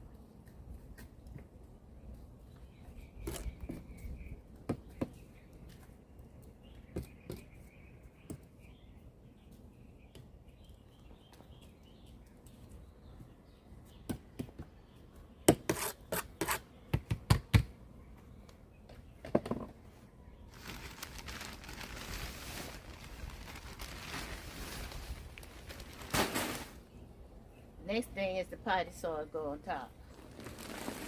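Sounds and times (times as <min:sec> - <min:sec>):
scratchy rustling in soil: 0:20.5 - 0:26.8, 0:30.0 - 0:31.0
knocks and scrapes in soil: 0:30.1 - 0:31.0.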